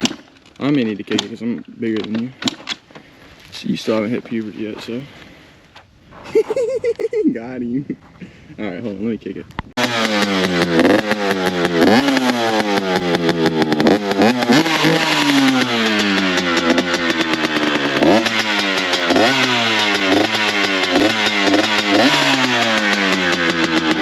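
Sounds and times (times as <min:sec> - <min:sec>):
dirt bike engine revving: 0:09.8 - 0:24.0.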